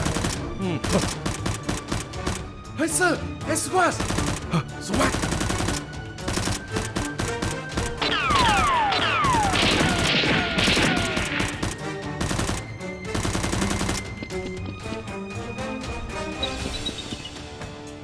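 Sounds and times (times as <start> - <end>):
rapid gunfire bursts: 0.0 - 2.4, 3.9 - 14.2
background music: 0.0 - 18.0.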